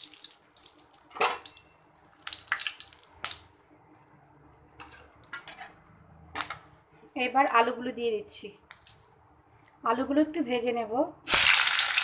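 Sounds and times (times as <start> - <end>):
spices crackling in hot oil: 0.0 - 3.7, 11.3 - 12.0.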